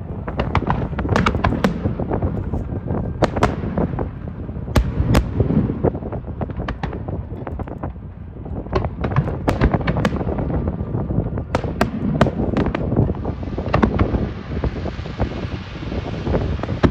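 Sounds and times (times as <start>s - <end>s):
fireworks cracking and banging: 0.0s - 16.9s
low continuous rumble: 0.0s - 16.9s.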